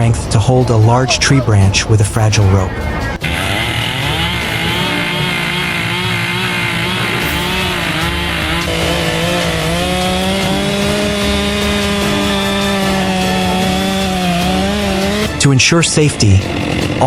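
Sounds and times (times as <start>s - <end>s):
chainsaw cutting into a tree: 3.2s - 15.4s.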